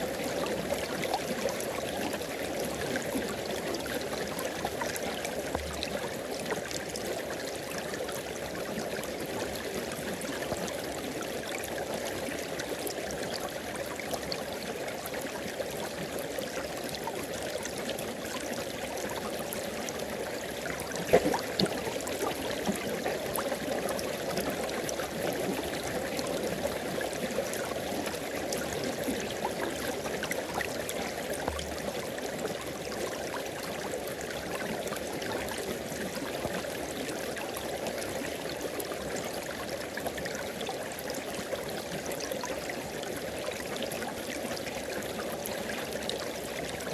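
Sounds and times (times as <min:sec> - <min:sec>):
water splash: 0:21.0 - 0:22.2.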